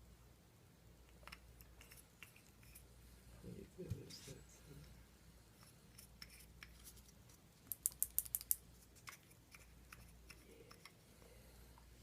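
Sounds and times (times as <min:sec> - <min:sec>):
sharp clicks: 0:07.7 - 0:09.2.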